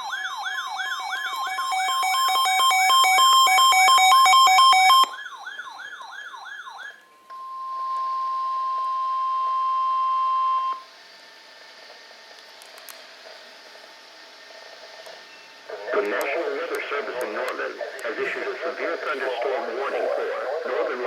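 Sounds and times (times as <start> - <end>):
wailing siren-like alarm: 0.0 - 10.9
radio hiss: 15.6 - 21.0.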